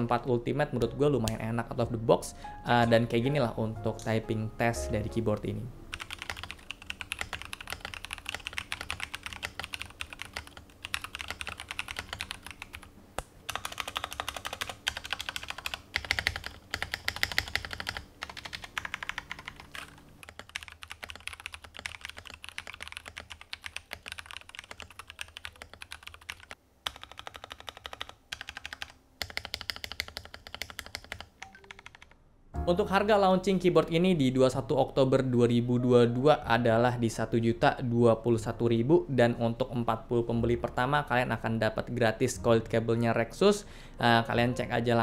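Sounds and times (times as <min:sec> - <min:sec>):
mechanical keyboard typing: 0:05.9 - 0:12.9, 0:13.5 - 0:32.2.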